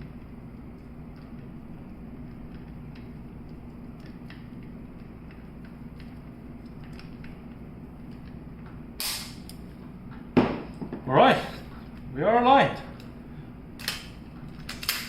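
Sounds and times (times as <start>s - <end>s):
steady low hum: 0.0s - 15.0s
clicks of metal gun parts: 13.8s - 15.0s.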